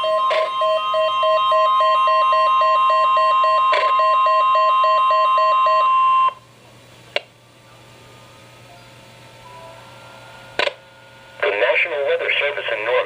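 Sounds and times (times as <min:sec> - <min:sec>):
high steady alarm tone: 0:00.0 - 0:06.4.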